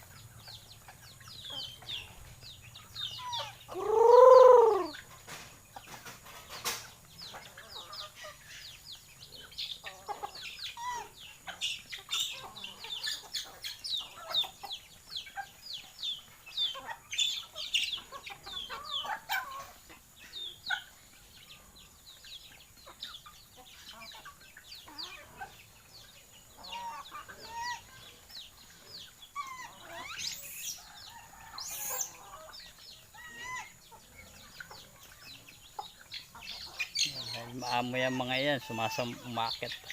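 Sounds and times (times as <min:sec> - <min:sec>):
chickens clucking: 0:00.0 - 0:39.9
chicks peeping: 0:00.0 - 0:39.9.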